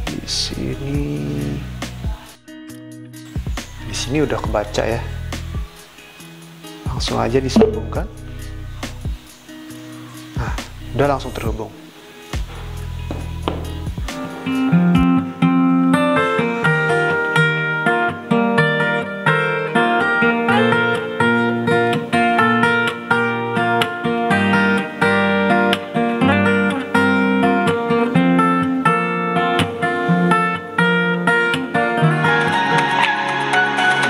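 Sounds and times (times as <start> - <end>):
acoustic guitar music from speaker: 5.6 - 8.7, 14.0 - 33.2
electronic music: 7.6 - 8.2.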